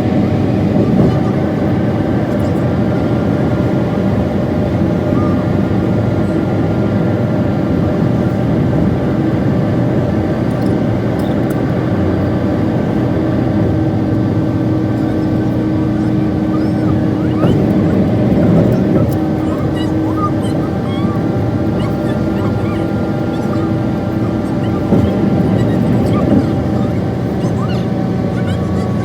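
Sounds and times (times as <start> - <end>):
moving vehicle drone: 0.0 - 29.0.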